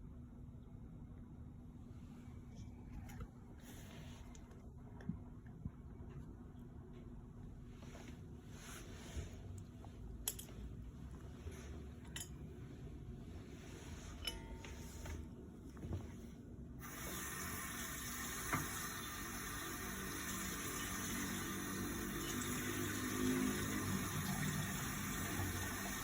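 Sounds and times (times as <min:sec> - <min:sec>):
faint low rumble: 0:00.0 - 0:16.4
water running: 0:16.8 - 0:26.0.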